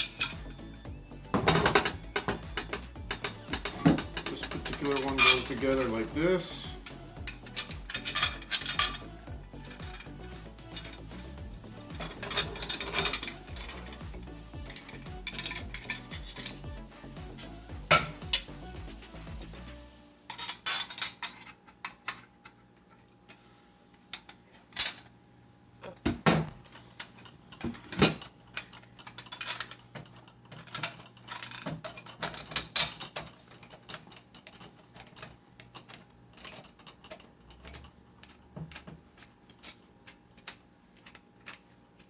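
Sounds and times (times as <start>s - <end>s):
steel parts clanking: 0.0s - 0.5s, 1.3s - 11.2s, 11.8s - 16.7s, 17.9s - 18.5s, 26.6s - 41.6s.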